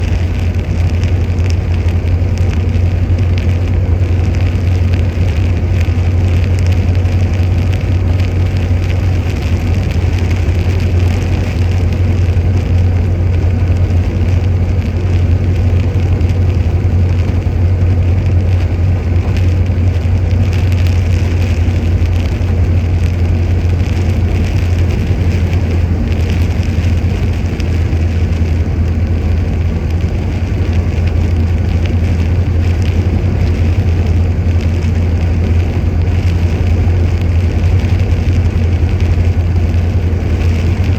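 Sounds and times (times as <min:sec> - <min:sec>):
car engine running: 0:00.0 - 0:40.9
rain falling on car: 0:00.0 - 0:40.9.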